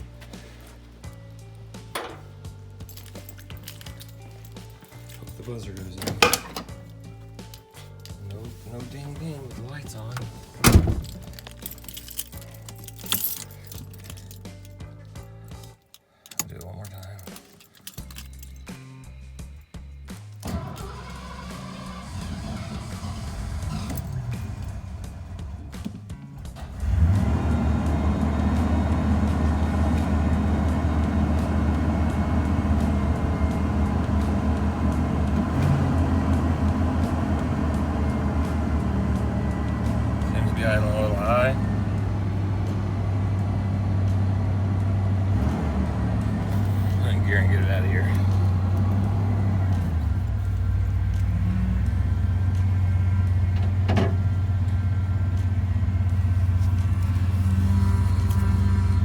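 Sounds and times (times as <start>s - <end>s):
truck engine idling: 0.0s - 3.3s, 8.3s - 11.6s, 20.4s - 59.0s.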